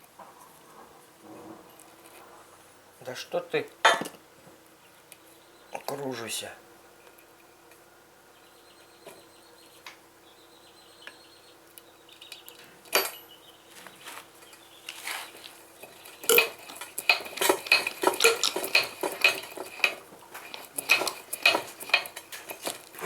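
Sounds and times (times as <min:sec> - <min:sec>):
metal objects clinking: 0:12.2 - 0:13.4, 0:15.7 - 0:23.0.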